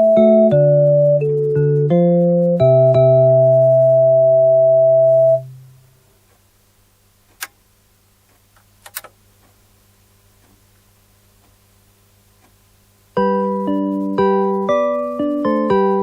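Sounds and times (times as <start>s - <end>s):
faint low hum: 0.0s - 16.0s
electronic chime tones: 2.2s - 5.6s
sharp clicks: 7.3s - 7.6s, 8.6s - 9.6s.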